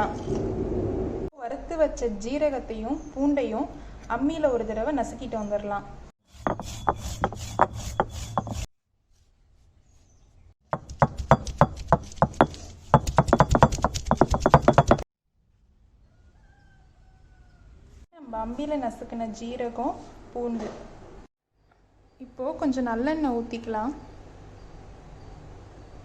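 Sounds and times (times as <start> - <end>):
stone roller pounding on slab: 6.4 - 8.7, 10.7 - 15.0.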